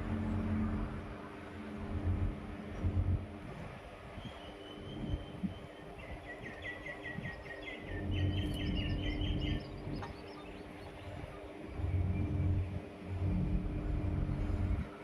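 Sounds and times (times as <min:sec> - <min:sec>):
low rumble: 0:00.0 - 0:15.0
sparrow chirping: 0:04.2 - 0:12.6.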